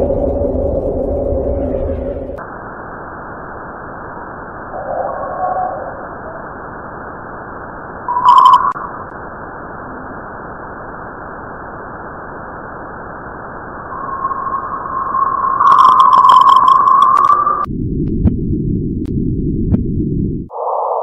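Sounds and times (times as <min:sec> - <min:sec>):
steady tone: 0:00.0 - 0:21.0
static hiss: 0:02.4 - 0:17.7.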